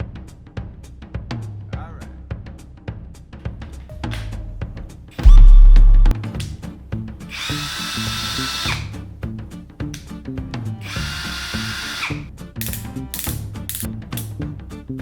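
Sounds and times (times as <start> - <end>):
deep bass boom: 3.9 - 6.2
music beat: 3.9 - 6.5
cordless drill motor whine: 7.3 - 8.9, 10.8 - 12.3.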